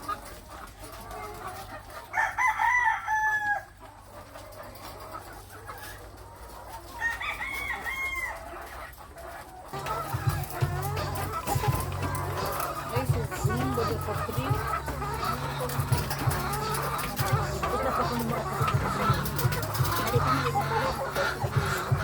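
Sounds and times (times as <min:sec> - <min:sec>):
chickens clucking faintly: 0:00.0 - 0:22.0
rooster crowing: 0:02.1 - 0:03.7, 0:07.0 - 0:08.3.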